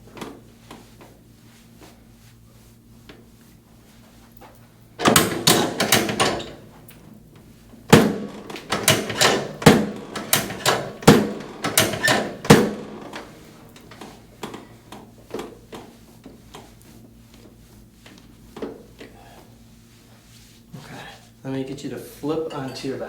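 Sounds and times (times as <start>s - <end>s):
table section snapping down: 5.0s - 6.6s, 7.9s - 14.0s.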